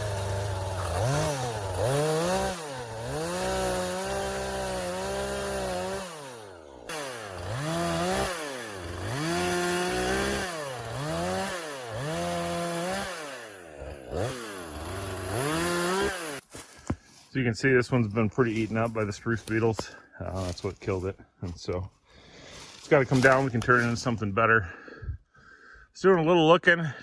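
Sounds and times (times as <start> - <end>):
chainsaw revving and idling: 0.0 - 16.7, 20.3 - 20.7.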